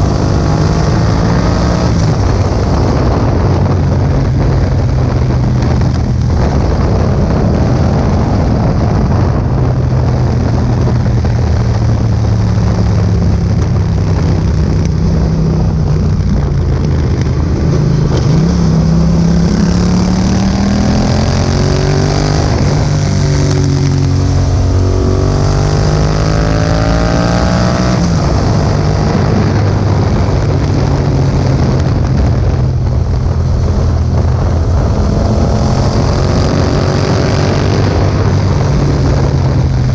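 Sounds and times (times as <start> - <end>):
motorcycle engine accelerating: 0.0 - 39.9
wind noise on microphone: 0.0 - 39.9.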